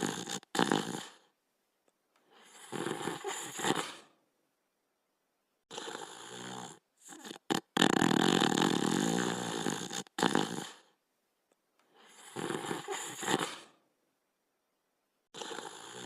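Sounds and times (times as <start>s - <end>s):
cartoon dog snoring: 0.0s - 1.3s, 2.4s - 4.1s, 5.7s - 11.0s, 12.0s - 13.8s, 15.3s - 16.0s.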